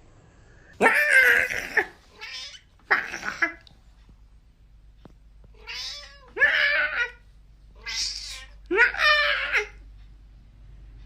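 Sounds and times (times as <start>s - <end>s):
cat meowing loudly: 0.8s - 3.4s, 5.6s - 7.2s, 7.8s - 9.8s.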